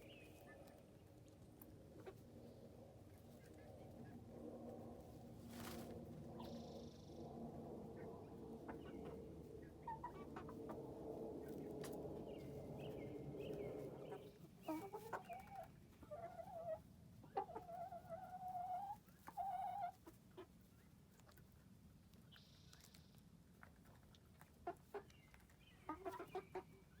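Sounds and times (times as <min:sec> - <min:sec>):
chickens clucking and murmuring: 0:00.0 - 0:27.0
drawn-out chicken calls: 0:05.5 - 0:21.6, 0:23.9 - 0:27.0.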